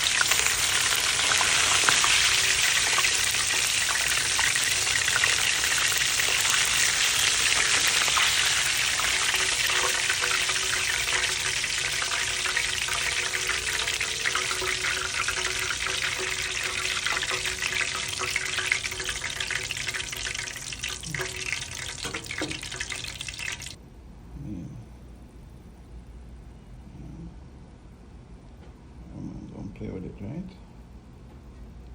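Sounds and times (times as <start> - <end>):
fish sizzling in hot oil: 0.0 - 23.8.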